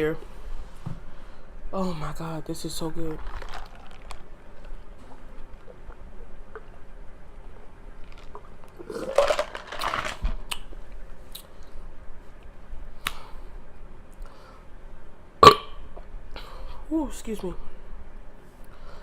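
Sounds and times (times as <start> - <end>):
chewing and mouth sounds: 3.1 - 6.8.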